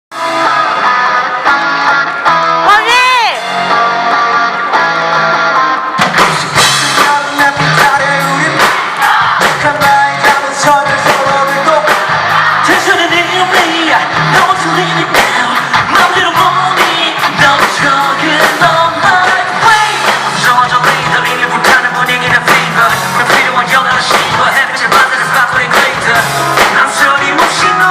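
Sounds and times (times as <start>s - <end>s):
live rock band: 0.1s - 27.9s
man singing lead vocal: 6.4s - 27.9s.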